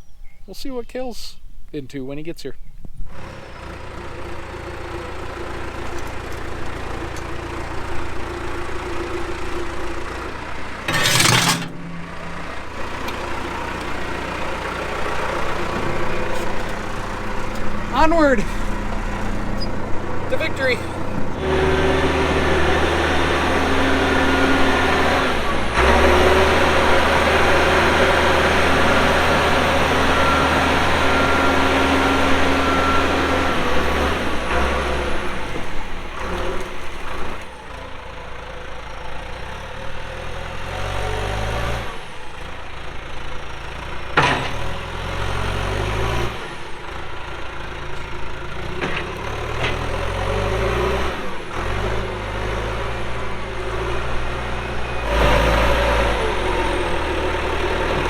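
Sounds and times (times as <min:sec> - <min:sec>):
backhoe diesel engine running: 0:03.0 - 0:58.0.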